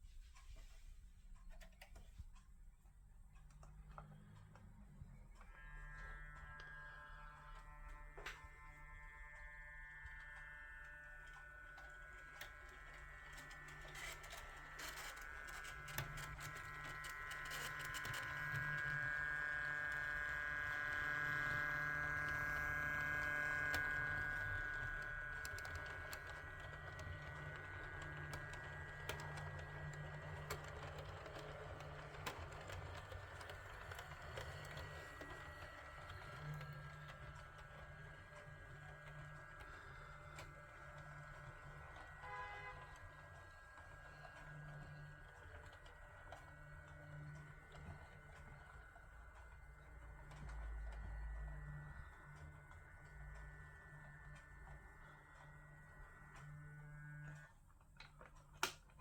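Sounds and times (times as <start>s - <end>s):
wheel clicks: 11.6s - 55.4s.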